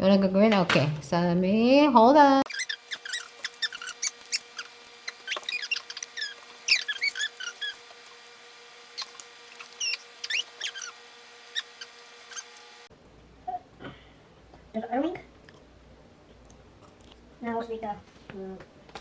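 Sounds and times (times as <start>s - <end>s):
plastic packaging squeaks and clicks: 2.5s - 12.6s.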